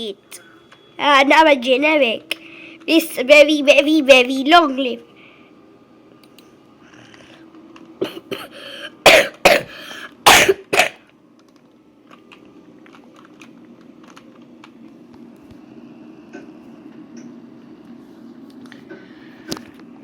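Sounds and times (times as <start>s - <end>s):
low steady hum: 0.0s - 20.0s
throat clearing: 8.0s - 8.5s
person coughing hard: 8.0s - 11.0s.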